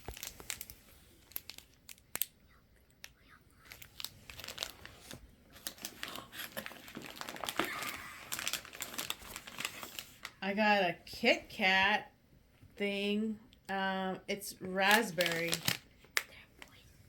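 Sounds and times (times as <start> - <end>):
plastic wrappers crinkling: 0.0 - 10.5, 14.8 - 16.8.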